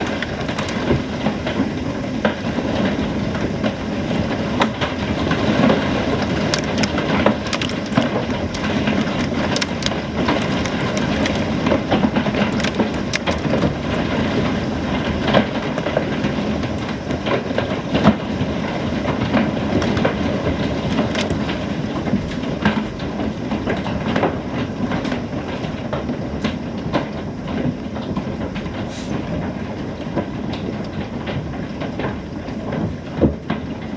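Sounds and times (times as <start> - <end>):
hailstones striking hard surfaces: 0.0 - 1.6, 5.1 - 18.2, 19.1 - 22.4
heavy rain: 0.0 - 33.9.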